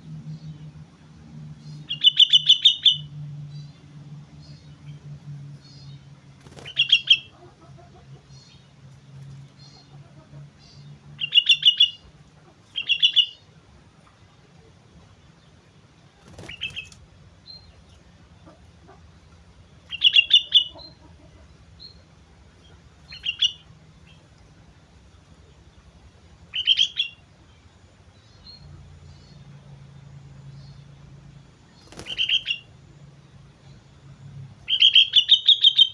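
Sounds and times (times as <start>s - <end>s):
bulbul singing: 1.6s - 7.4s, 9.6s - 14.1s, 19.6s - 31.0s, 31.7s - 35.9s
faint bird chirps: 25.3s - 31.0s, 31.7s - 35.9s.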